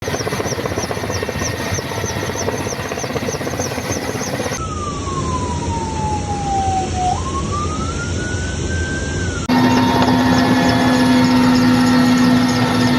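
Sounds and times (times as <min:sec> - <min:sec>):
high repeating chirp: 0:00.0 - 0:04.6
emergency vehicle siren wailing: 0:00.0 - 0:12.9
engine and wind noise: 0:00.0 - 0:12.9.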